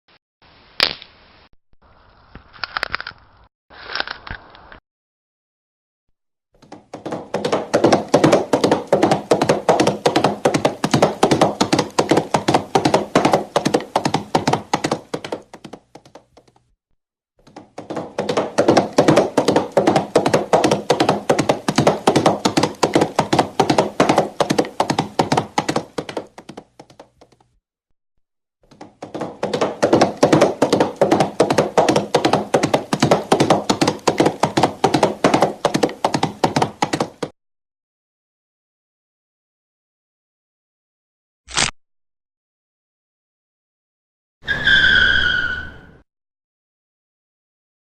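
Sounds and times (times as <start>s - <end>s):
galloping horse hoofbeats: 6.6s - 16.7s, 17.4s - 27.6s, 28.7s - 37.3s.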